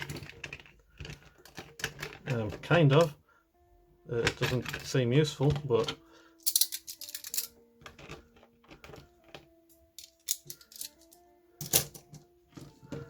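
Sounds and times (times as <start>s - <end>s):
faint background music: 0.0s - 13.0s
metal handcuffs clicking and rattling: 5.8s - 12.2s.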